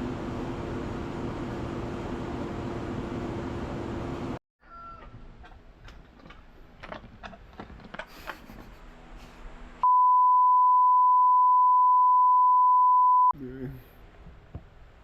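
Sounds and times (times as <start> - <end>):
censor bleep: 9.8 - 13.3.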